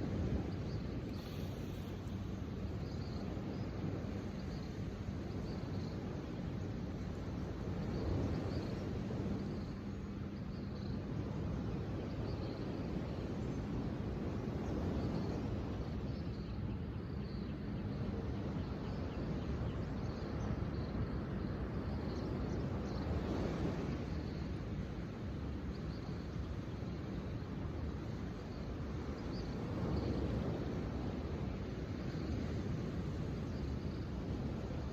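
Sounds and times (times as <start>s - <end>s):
constant low rumbling: 0.0s - 34.9s.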